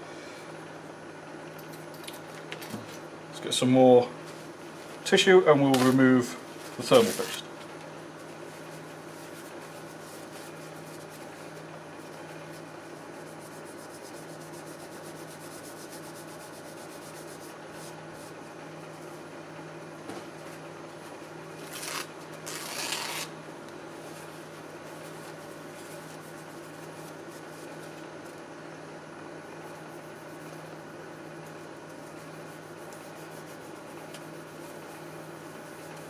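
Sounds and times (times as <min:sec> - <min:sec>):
steady low hum: 0:00.0 - 0:36.0
tissue wiping metal: 0:21.6 - 0:23.3, 0:31.4 - 0:36.0.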